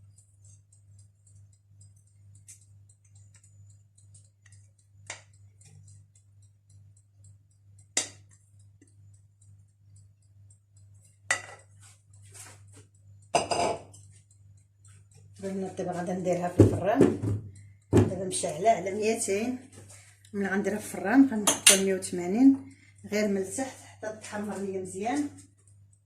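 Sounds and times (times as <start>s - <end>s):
faint steady hum: 0.0s - 26.0s
metal utensils clinking on countertop: 21.4s - 22.0s.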